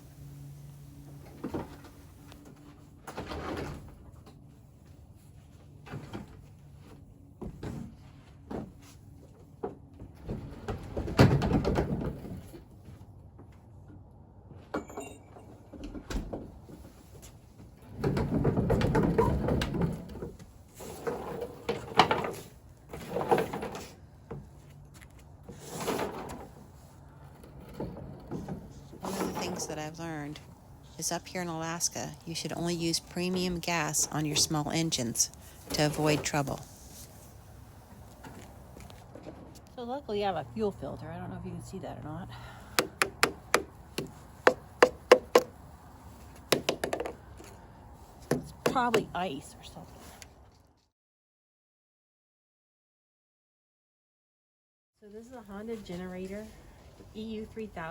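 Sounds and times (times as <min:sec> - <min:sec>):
equipment bumps and knocks: 0:42.8 - 0:45.6.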